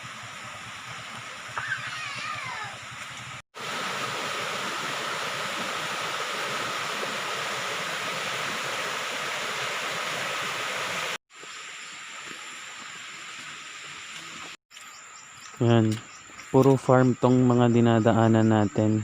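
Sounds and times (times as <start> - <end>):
rushing water: 0.0 - 14.6
insect drone with high whine: 3.6 - 19.0.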